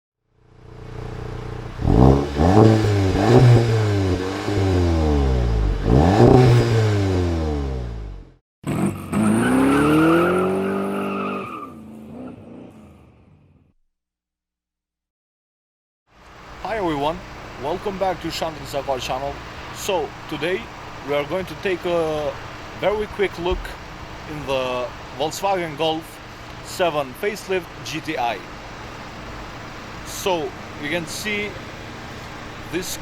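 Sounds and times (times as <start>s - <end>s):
car engine revving: 0.6s - 11.2s.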